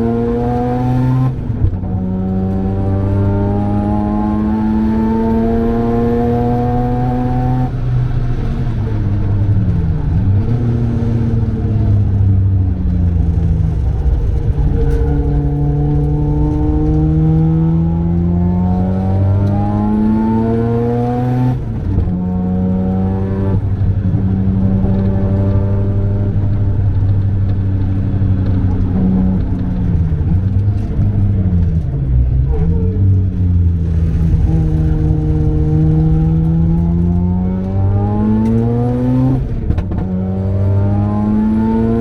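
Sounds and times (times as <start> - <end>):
rotary engine accelerating hard: 0.0 - 42.0.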